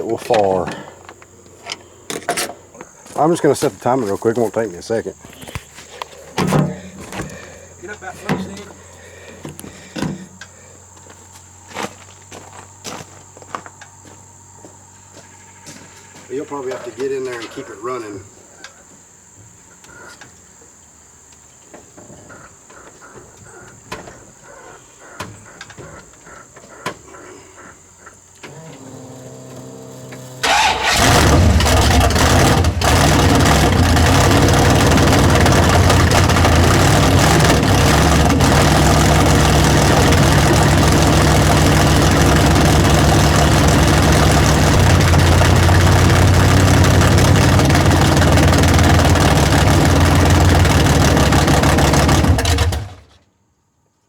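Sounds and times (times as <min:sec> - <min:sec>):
starter motor cranking: 0:28.4 - 0:53.0
car engine running loud: 0:28.5 - 0:53.0.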